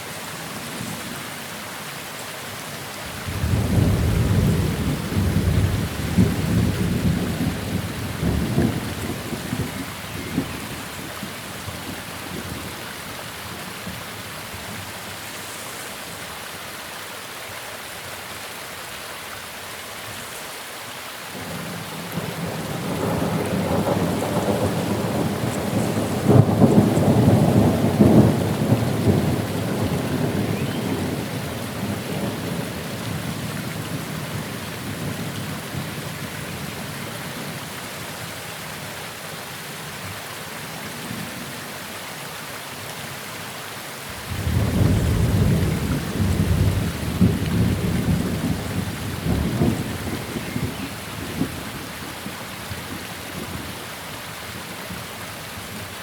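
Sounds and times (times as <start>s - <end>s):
steady rain: 0.0s - 56.0s
thunder rolling: 44.3s - 51.7s.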